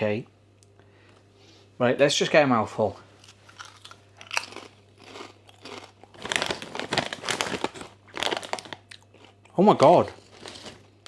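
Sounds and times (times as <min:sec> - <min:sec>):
person crunching potato crisps: 0:03.2 - 0:11.0.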